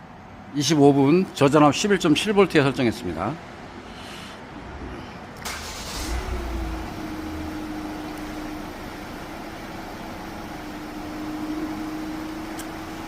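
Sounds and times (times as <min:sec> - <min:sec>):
diesel engine starting and idling: 0:04.6 - 0:13.0.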